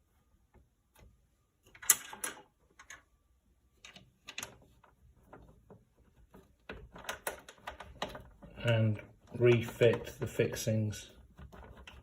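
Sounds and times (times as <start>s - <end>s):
knocks and scrapes of handling: 3.7s - 12.0s.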